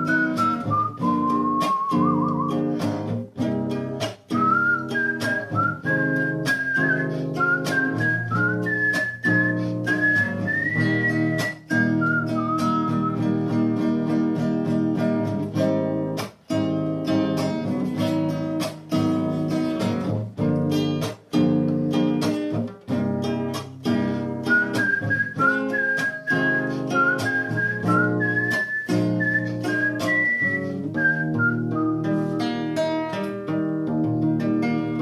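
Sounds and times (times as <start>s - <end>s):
thin high whistling line: 0.0s - 2.6s, 4.4s - 13.3s, 24.5s - 32.4s
acoustic guitar: 0.0s - 35.0s.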